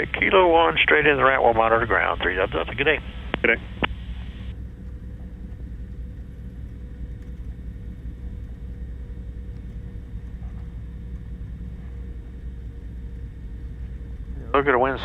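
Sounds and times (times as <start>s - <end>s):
piston aircraft engines droning: 0.0s - 15.0s.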